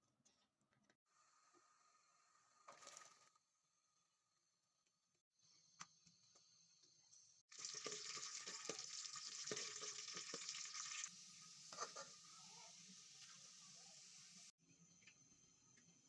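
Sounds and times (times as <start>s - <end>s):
food sizzling in hot oil: 7.5s - 14.6s.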